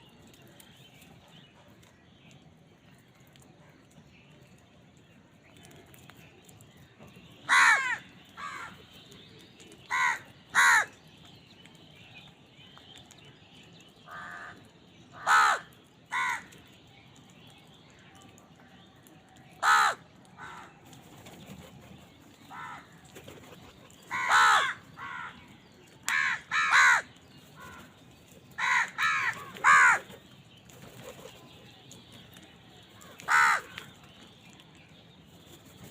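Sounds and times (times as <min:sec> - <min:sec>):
crows cawing: 0:07.5 - 0:08.7, 0:09.9 - 0:10.9, 0:14.1 - 0:14.6, 0:15.2 - 0:16.5, 0:19.6 - 0:20.7, 0:22.5 - 0:22.9, 0:24.1 - 0:25.4, 0:26.1 - 0:27.1, 0:28.6 - 0:30.1, 0:33.3 - 0:33.8.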